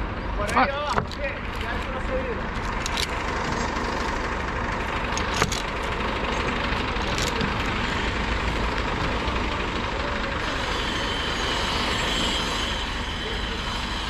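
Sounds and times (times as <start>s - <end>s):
engine idling: 0.0s - 14.0s.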